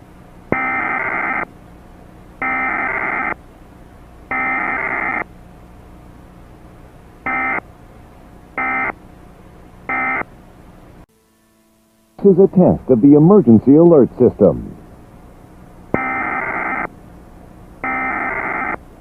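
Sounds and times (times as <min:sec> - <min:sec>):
low hum: 0:00.0 - 0:19.0
distorted buzzy data bursts: 0:00.5 - 0:01.5, 0:02.4 - 0:03.4, 0:04.3 - 0:05.3, 0:08.6 - 0:09.0, 0:16.0 - 0:16.9, 0:17.8 - 0:18.8.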